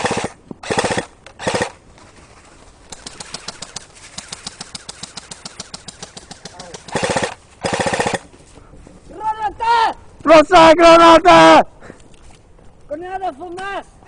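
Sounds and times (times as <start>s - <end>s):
airsoft gun full-auto bursts: 0.0s - 1.8s, 2.9s - 8.3s.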